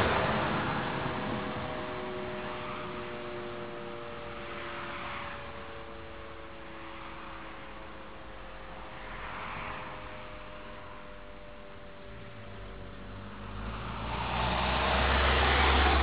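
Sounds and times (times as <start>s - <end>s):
distant siren tones: 0.7s - 8.5s.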